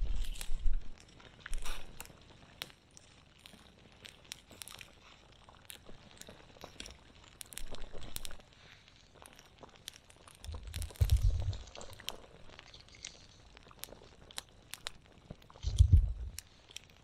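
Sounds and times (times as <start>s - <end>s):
campfire crackling and popping: 0.0s - 17.0s
low rumble: 10.5s - 11.7s, 15.6s - 16.4s.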